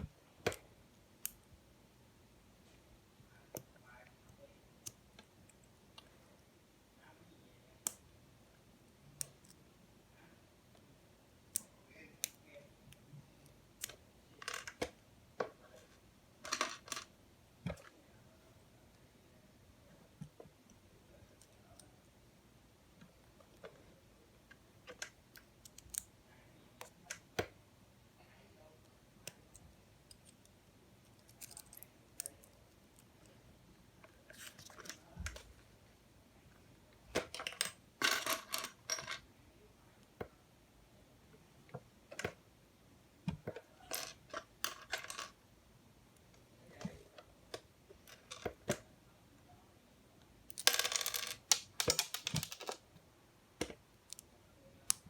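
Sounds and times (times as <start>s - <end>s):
plastic pieces clicking: 50.5s - 50.7s, 51.3s - 52.8s.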